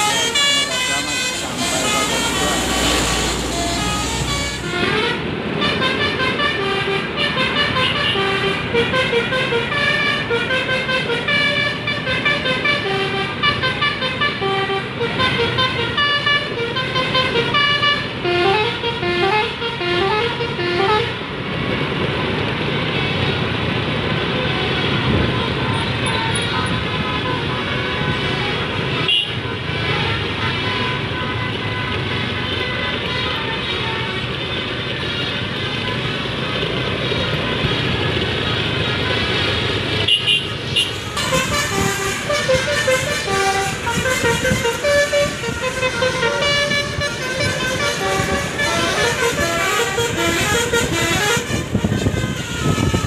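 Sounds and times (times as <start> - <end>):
musical air horn melody: 0.0 - 21.2, 40.1 - 53.0
bus engine: 0.0 - 53.0
traffic noise: 0.0 - 53.0.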